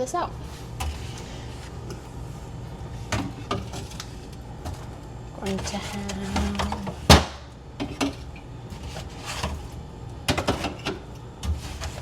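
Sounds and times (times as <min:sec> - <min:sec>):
refrigerator shelf clunking: 0:03.0 - 0:12.0.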